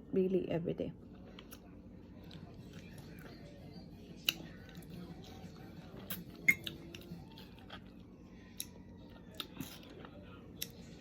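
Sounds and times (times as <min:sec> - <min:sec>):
faint low hum: 0:00.0 - 0:11.0.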